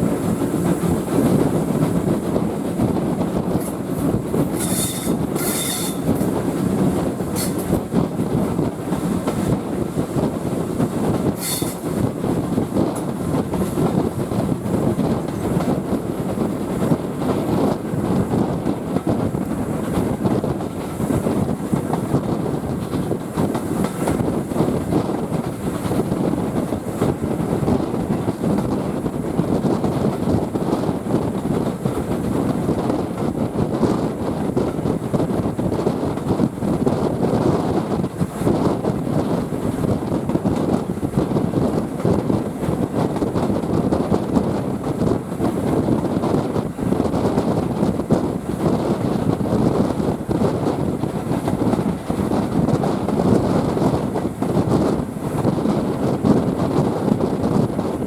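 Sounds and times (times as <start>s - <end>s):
train wheels rumbling on rail: 0.0s - 58.0s
high-pitched wheel squeals: 4.6s - 6.1s, 11.4s - 11.8s.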